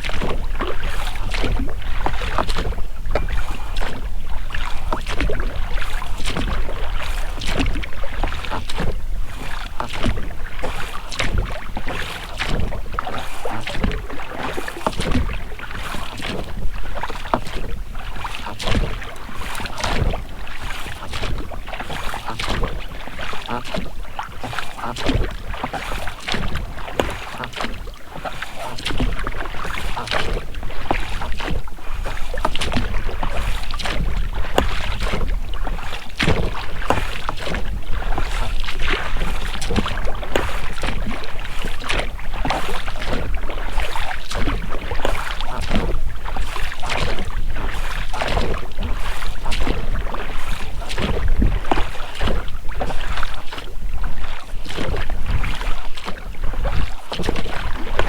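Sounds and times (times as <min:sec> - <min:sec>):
oars splashing in water: 0:00.0 - 0:58.0
rubber rowlocks creaking: 0:02.0 - 0:04.0.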